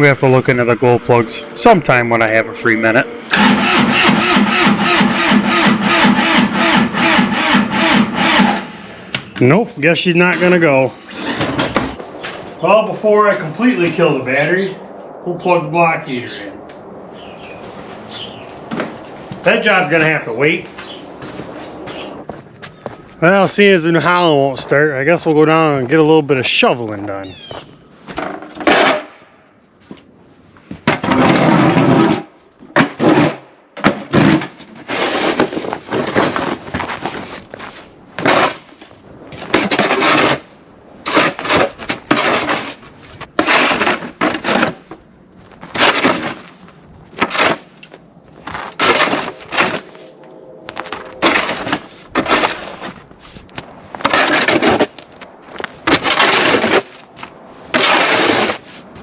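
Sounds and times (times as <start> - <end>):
snow shovel scraping snow: 34.1 - 45.0, 45.7 - 47.8, 48.4 - 50.1, 50.7 - 59.0.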